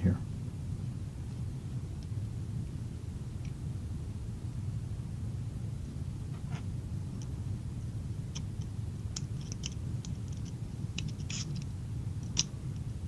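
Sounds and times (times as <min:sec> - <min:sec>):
steady low hum: 0:00.0 - 0:13.0
small parts clicking: 0:09.2 - 0:12.5.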